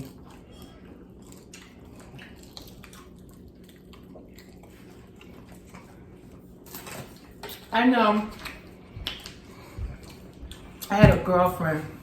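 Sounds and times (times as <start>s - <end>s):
people chewing: 0.0s - 7.6s, 8.3s - 10.9s.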